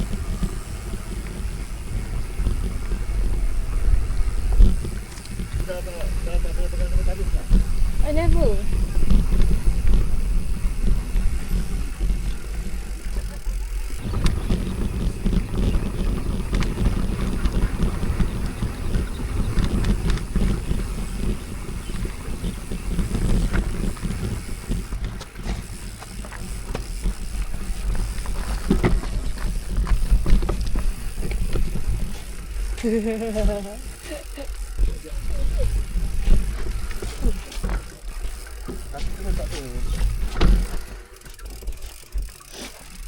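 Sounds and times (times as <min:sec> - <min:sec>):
wind rumble on microphone: 0:00.0 - 0:13.2, 0:14.0 - 0:33.6
bike rattling and knocking: 0:00.0 - 0:43.0
bike tyre noise: 0:00.0 - 0:43.0.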